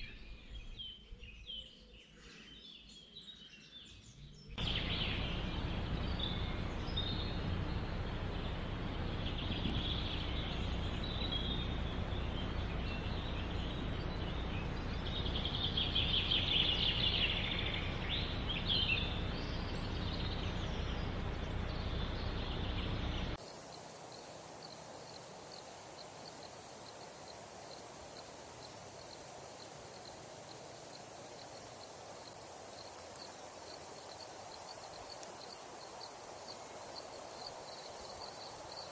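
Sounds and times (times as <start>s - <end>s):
birds calling: 4.6s - 23.4s
wind rumble: 4.6s - 23.4s.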